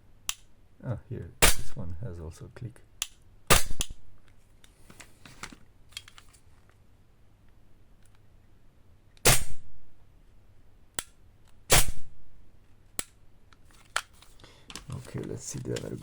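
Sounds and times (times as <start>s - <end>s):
airsoft pistol shots: 1.4s - 1.8s, 3.5s - 4.0s, 9.2s - 9.8s, 11.7s - 12.2s
trigger clicks: 3.0s - 4.0s.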